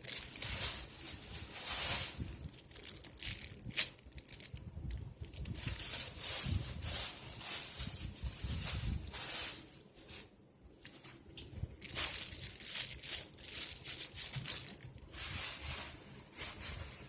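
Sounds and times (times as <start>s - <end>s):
materials crinkling and rustling: 0.0s - 17.0s.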